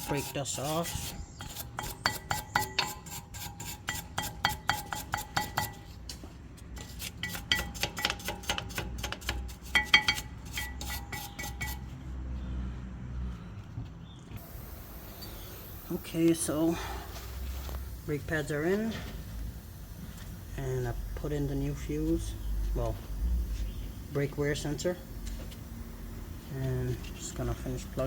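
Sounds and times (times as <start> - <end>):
metal scraping: 6.8 - 12.0.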